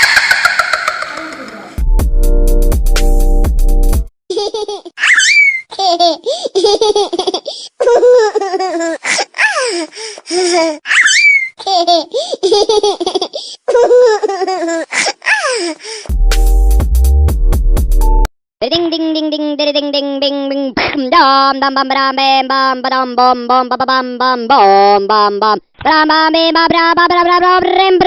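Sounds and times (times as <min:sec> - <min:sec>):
high-pitched laughing ringtone: 0:00.0 - 0:01.5.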